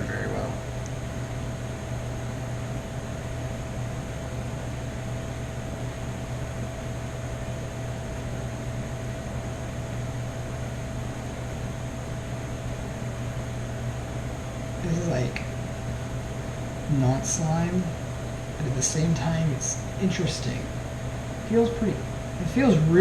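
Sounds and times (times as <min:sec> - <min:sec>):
background hum: 0:00.0 - 0:23.0
even hiss: 0:14.8 - 0:23.0.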